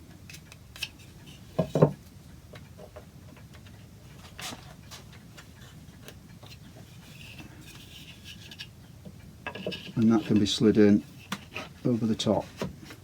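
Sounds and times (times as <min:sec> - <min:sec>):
wooden chair parts knocking: 0:01.6 - 0:02.0
soft wood scrape: 0:06.5 - 0:08.7, 0:09.5 - 0:13.0.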